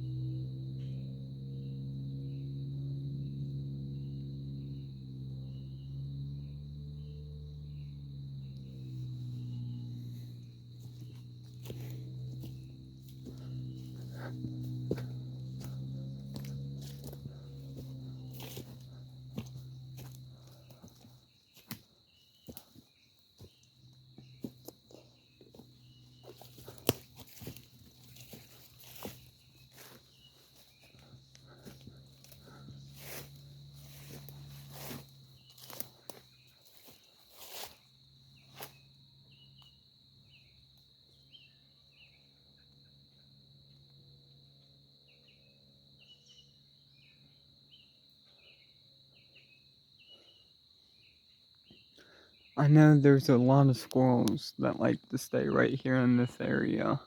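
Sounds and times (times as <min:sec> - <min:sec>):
high-pitched insect drone: 0:00.0 - 0:40.5
footsteps crunching through leaves: 0:10.7 - 0:21.8, 0:24.3 - 0:37.8.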